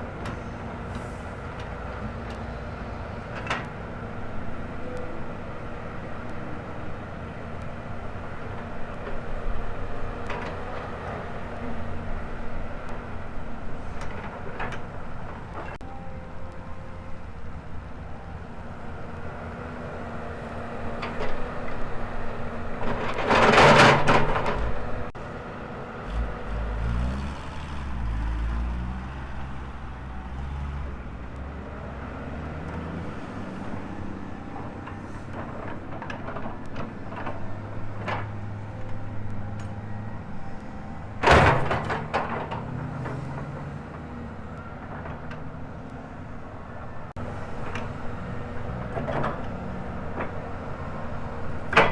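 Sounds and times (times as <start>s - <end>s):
excavator diesel engine running: 0.0s - 51.9s.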